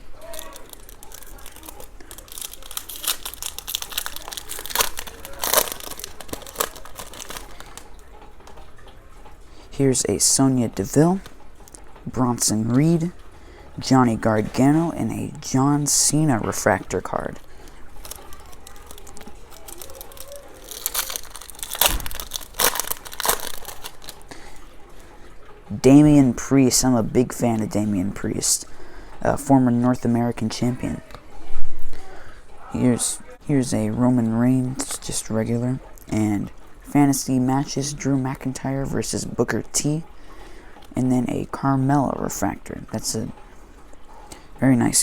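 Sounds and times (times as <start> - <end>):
wrapper ripping: 0.0 - 7.9, 16.7 - 24.5
wrapper crinkling: 0.0 - 8.3, 16.3 - 24.8.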